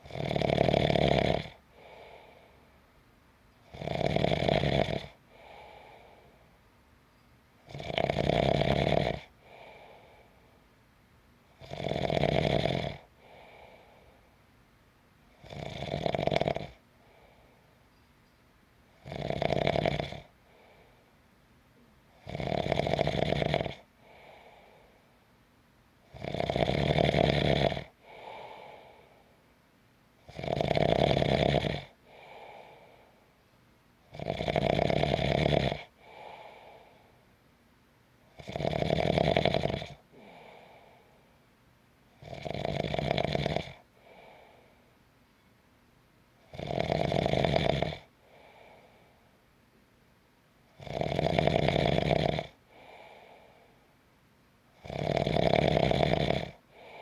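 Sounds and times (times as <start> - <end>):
person snoring: 0.0 - 2.4, 3.7 - 6.2, 7.7 - 10.2, 11.6 - 14.1, 15.4 - 16.8, 19.0 - 20.3, 22.2 - 24.8, 26.1 - 29.2, 30.3 - 33.0, 34.1 - 37.0, 38.4 - 41.1, 42.2 - 44.6, 46.5 - 48.9, 50.8 - 53.5, 54.8 - 57.0.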